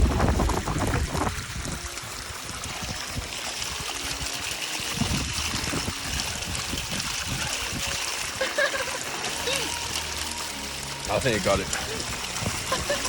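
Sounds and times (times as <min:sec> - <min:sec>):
low rumbling: 0:00.0 - 0:02.6
waterfall rushing: 0:00.0 - 0:13.0.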